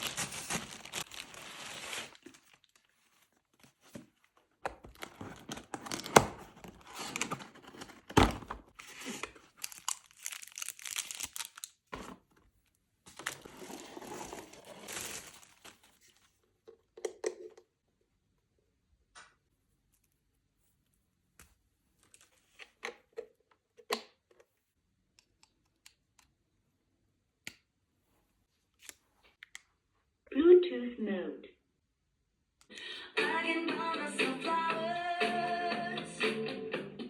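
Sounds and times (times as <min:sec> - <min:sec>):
packaging tearing and crinkling: 0:00.0 - 0:02.9, 0:04.9 - 0:12.2, 0:13.2 - 0:15.9.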